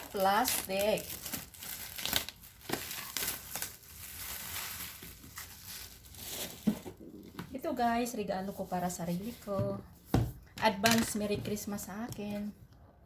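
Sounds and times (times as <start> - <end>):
plastic wrapping crinkling: 0.0 - 7.0.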